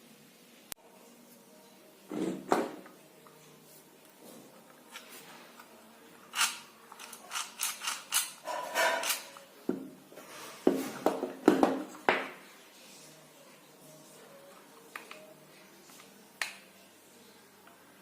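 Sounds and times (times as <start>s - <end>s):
scrapes and clicks of handling: 3.3s - 9.5s.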